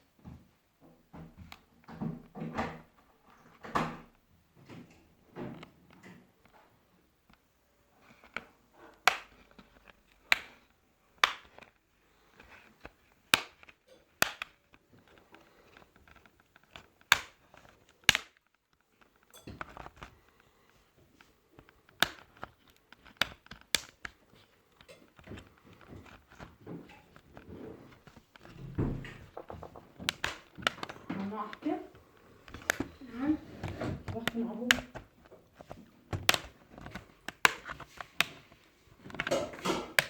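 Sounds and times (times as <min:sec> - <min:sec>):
laptop plastic clicks and taps: 0:08.0 - 0:27.4, 0:28.0 - 0:40.0.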